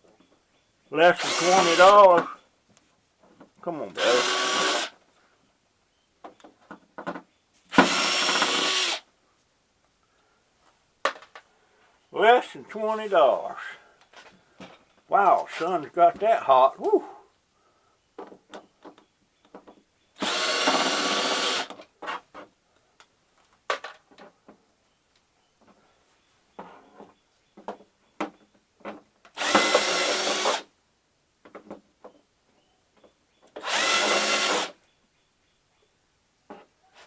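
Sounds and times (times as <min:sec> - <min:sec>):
power drill driving screws: 0:01.1 - 0:02.3, 0:04.0 - 0:05.0, 0:07.7 - 0:09.0, 0:20.2 - 0:21.8, 0:29.3 - 0:30.7, 0:33.6 - 0:34.8.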